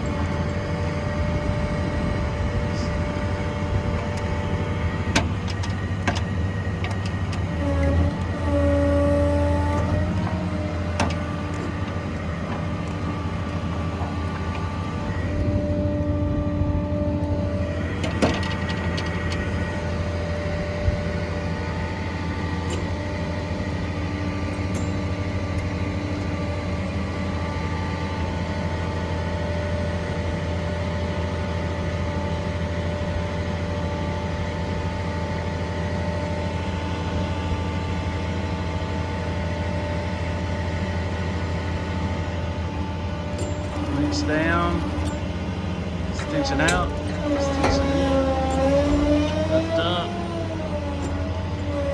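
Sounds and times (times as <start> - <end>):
diesel engine running: 0.0 - 51.9
multi-tone whine: 0.0 - 51.9.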